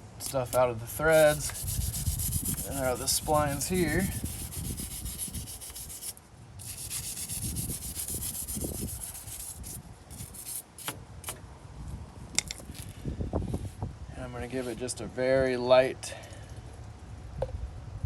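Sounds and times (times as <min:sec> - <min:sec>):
stiff brush scrubbing metal: 0:00.2 - 0:10.9.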